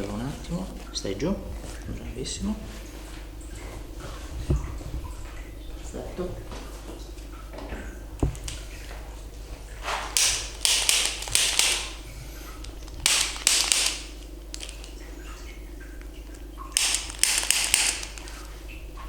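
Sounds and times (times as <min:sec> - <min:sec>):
treatment table ratchet clicking: 0:10.2 - 0:12.0, 0:16.8 - 0:18.4.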